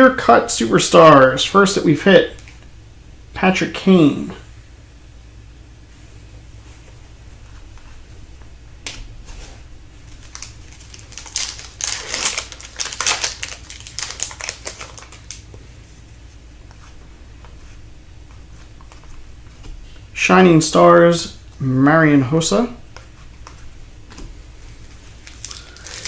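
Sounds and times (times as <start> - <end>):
faint steady hum: 0.0 - 26.0
cards being handled: 8.8 - 15.7, 22.9 - 26.0
wrapper tearing and crinkling: 10.1 - 15.4, 24.8 - 26.0.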